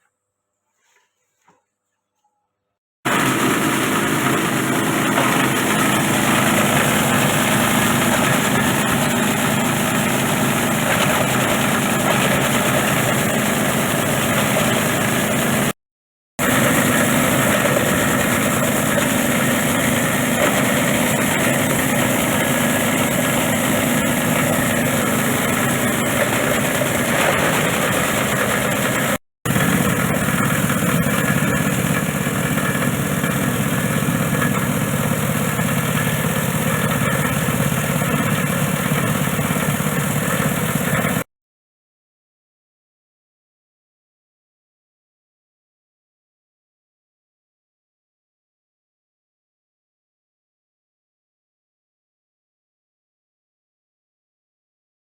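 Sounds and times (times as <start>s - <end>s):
shredder machine droning: 3.1s - 15.8s, 16.4s - 41.3s.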